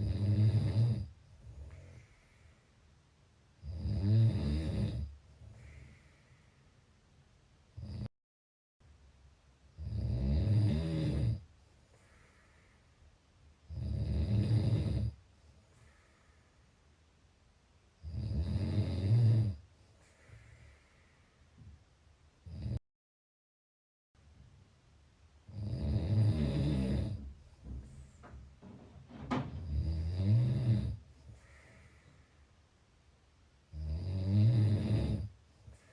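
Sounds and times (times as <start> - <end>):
person snoring: 0.0 - 1.1, 3.6 - 6.0, 7.8 - 8.1, 9.8 - 11.4, 13.7 - 15.2, 18.0 - 19.6, 25.5 - 27.3, 29.6 - 31.0, 33.7 - 35.3
soft breathing: 1.3 - 3.2, 5.2 - 7.1, 11.4 - 13.4, 15.2 - 17.2, 19.6 - 21.9, 26.8 - 32.7, 35.2 - 35.9.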